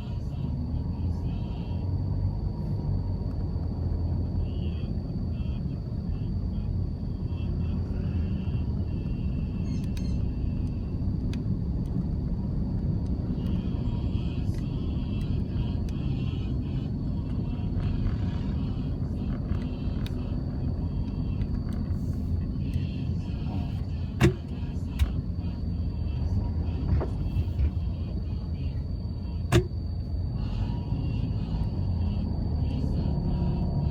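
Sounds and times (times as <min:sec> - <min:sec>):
car engine and tyre rumble: 0:00.0 - 0:33.9
sharp click: 0:24.2 - 0:25.2, 0:29.5 - 0:29.8.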